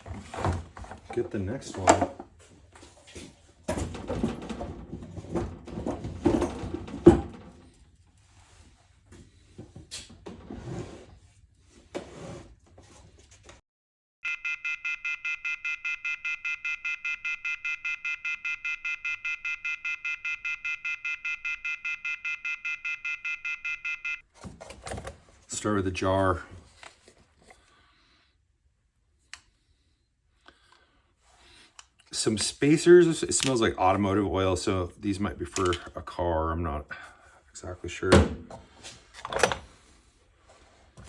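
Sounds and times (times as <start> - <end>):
drawers and metal tools clattering: 0.0 - 8.0, 24.3 - 25.5, 38.2 - 40.0
rapid electronic beeping: 14.3 - 24.2.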